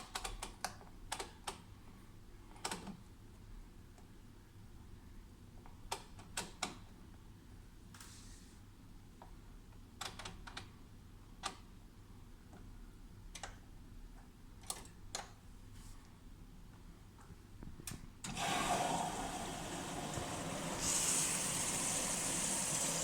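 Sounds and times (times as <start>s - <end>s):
washing machine clicks: 17.8s - 23.0s
loud steady hiss: 18.4s - 23.0s.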